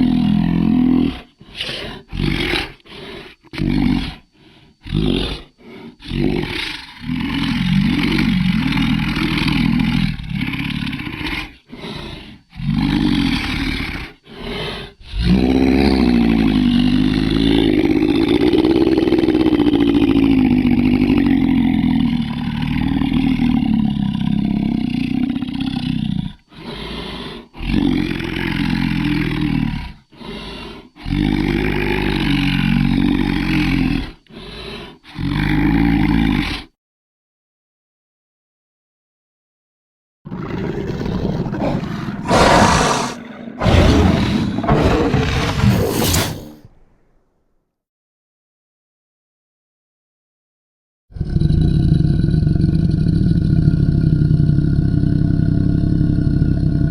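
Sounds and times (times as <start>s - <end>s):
monster roaring and growling: 40.3s - 47.0s, 51.2s - 56.9s.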